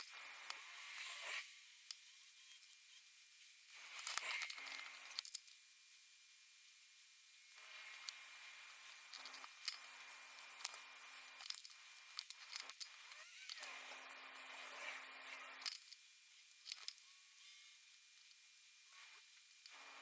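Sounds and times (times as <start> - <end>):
hiss: 0.0 - 1.6
faint steady hum: 0.0 - 20.0.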